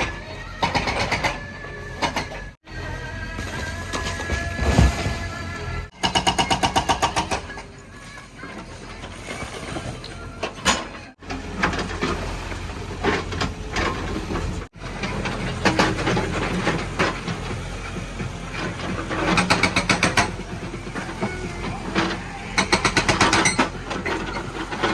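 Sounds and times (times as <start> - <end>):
diesel engine running: 0.0 - 24.9
hydraulic breaker hammering: 5.9 - 7.7, 19.2 - 24.9.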